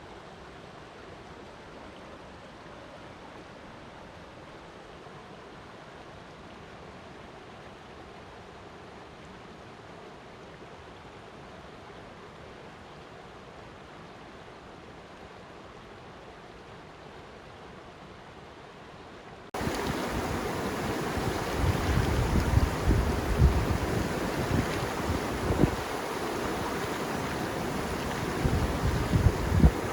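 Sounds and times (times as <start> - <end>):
low rumbling water surges: 0.0 - 29.9
water rushing: 19.6 - 29.9.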